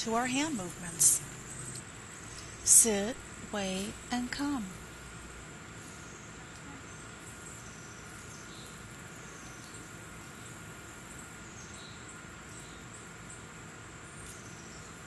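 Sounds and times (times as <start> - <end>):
continuous high-pitched tones: 0.0 - 4.9.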